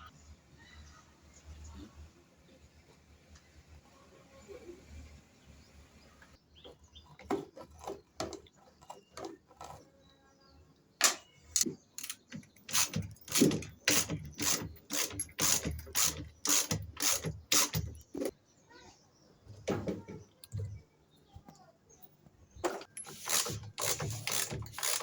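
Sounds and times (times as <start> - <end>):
sharp mechanical clicks and knocks: 11.0 - 18.3, 22.6 - 25.0.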